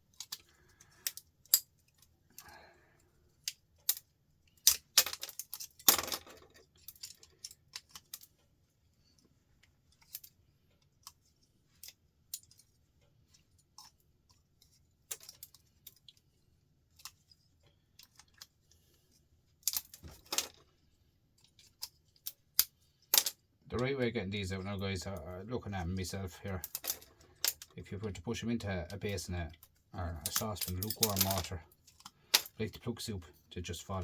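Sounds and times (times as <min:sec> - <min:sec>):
metal parts and tools clinking: 0:00.0 - 0:02.6, 0:03.3 - 0:08.5, 0:09.9 - 0:16.3, 0:16.9 - 0:20.8, 0:21.4 - 0:23.5, 0:26.5 - 0:28.2, 0:28.9 - 0:33.5.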